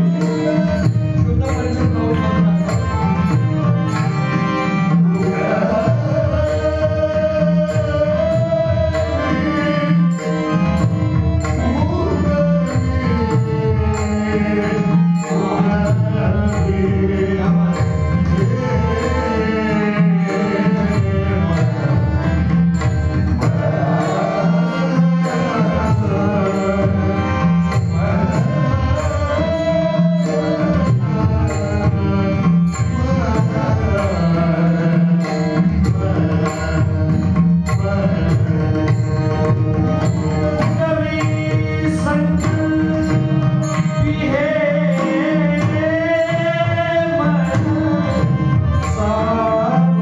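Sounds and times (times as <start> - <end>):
mridang drumming: 0.0 - 50.0
person singing: 0.0 - 50.0.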